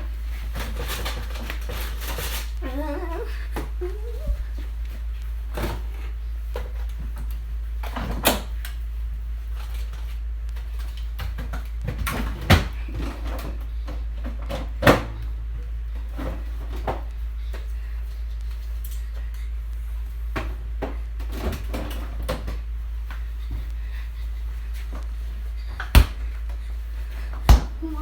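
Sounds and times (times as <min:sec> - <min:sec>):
knocks and rattles of handled things: 0:00.0 - 0:02.6, 0:09.5 - 0:15.3, 0:20.3 - 0:23.7
steady low hum: 0:00.0 - 0:28.0.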